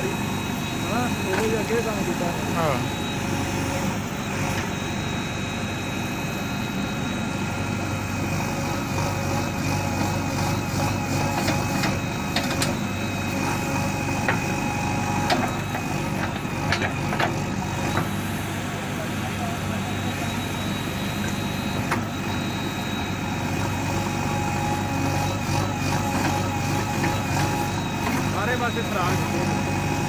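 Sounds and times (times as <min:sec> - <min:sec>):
diesel engine running: 0:00.0 - 0:30.0.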